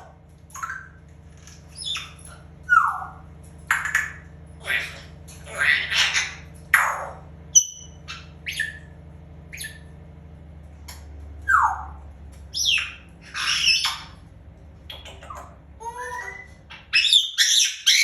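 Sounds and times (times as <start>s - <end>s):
parrot chirps and whistles: 0.5s - 1.0s, 1.7s - 9.9s, 11.4s - 14.2s, 14.9s - 18.0s
parrot harsh squawks: 1.8s - 8.9s, 12.6s - 14.2s, 15.2s - 18.0s.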